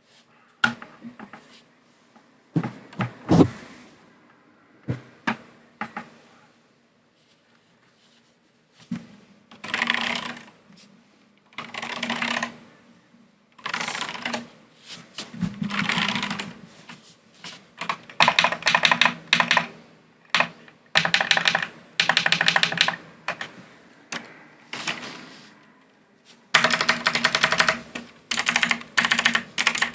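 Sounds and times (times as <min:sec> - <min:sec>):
mechanical keyboard typing: 0:09.6 - 0:10.5, 0:11.6 - 0:12.5, 0:13.6 - 0:14.5, 0:15.7 - 0:16.5, 0:17.8 - 0:19.7, 0:20.3 - 0:23.5, 0:26.5 - 0:29.9.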